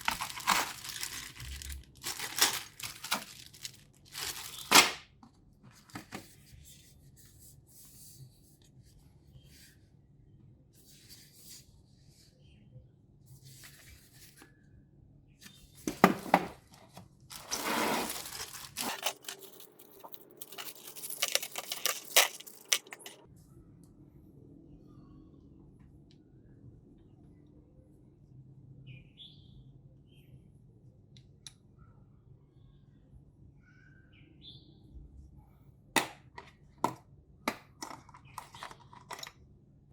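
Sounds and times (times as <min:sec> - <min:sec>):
packaging tearing: 0:00.0 - 0:05.0, 0:17.3 - 0:23.2
plastic wrap crinkling: 0:00.0 - 0:05.0, 0:17.3 - 0:23.3.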